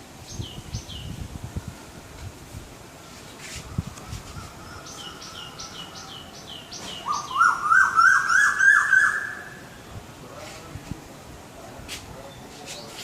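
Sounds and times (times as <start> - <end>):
bird calling: 3.6 - 9.8.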